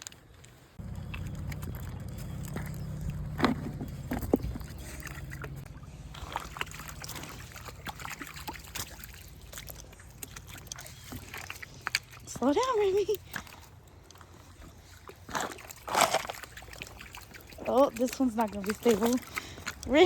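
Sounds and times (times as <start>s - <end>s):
footsteps sloshing through creek: 0.0s - 20.0s
stones knocking underfoot: 0.8s - 5.6s
low rumble: 0.8s - 10.3s.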